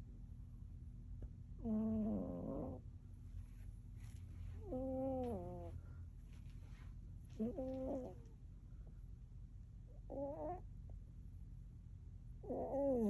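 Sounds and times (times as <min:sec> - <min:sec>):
cat snoring: 0:01.6 - 0:02.8, 0:04.6 - 0:05.7, 0:07.4 - 0:08.2, 0:10.1 - 0:10.6, 0:12.4 - 0:13.0.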